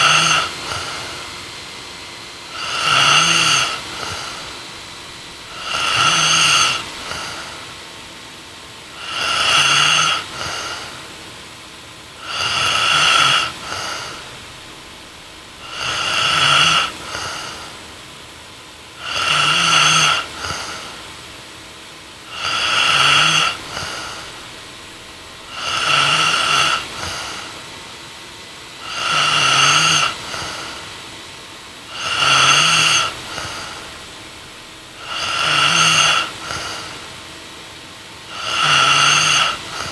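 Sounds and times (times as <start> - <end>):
woman snoring: 0.0 - 1.4, 2.4 - 8.0, 8.8 - 11.2, 12.1 - 18.0, 18.9 - 21.3, 22.2 - 27.7, 28.7 - 31.1, 31.8 - 37.3, 38.2 - 39.9
quiet breathing: 2.5 - 8.2, 12.1 - 18.2, 18.9 - 21.4, 22.1 - 27.7, 31.8 - 37.2, 38.2 - 39.9.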